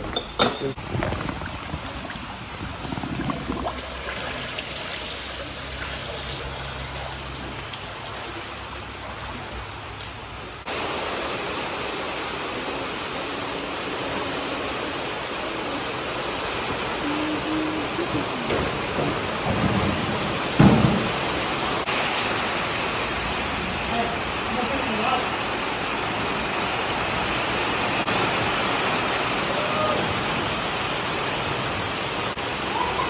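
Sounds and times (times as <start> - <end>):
storm water rushing: 0.0 - 33.0.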